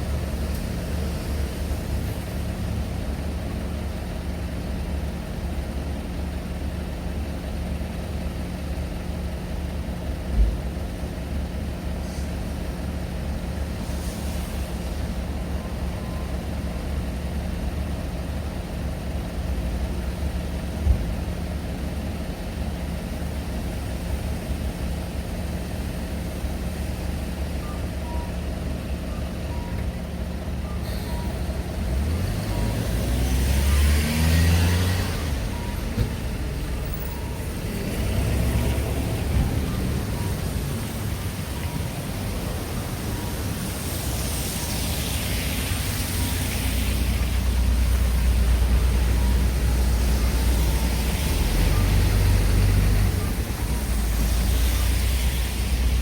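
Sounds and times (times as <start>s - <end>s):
low traffic rumble: 0.0s - 56.0s
car passing and pulling away: 31.2s - 56.0s.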